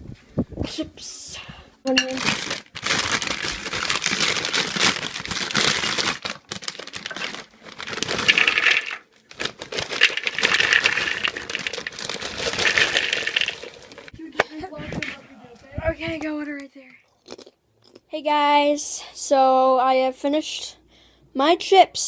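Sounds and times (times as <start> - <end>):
chip bag crinkling: 2.1 - 14.1.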